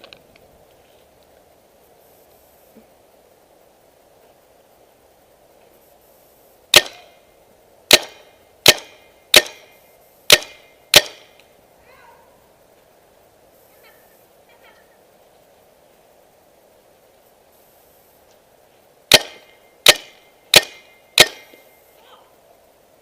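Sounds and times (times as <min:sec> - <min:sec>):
paintball marker shots: 0:06.7 - 0:07.1, 0:07.9 - 0:11.5, 0:19.1 - 0:21.6.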